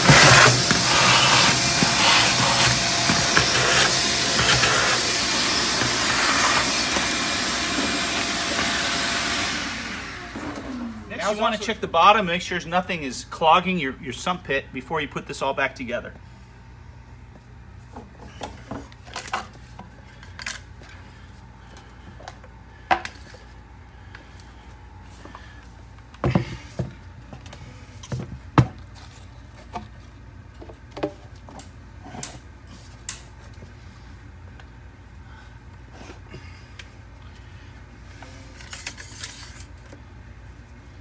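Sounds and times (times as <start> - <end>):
steady low hum: 10.9 - 41.0.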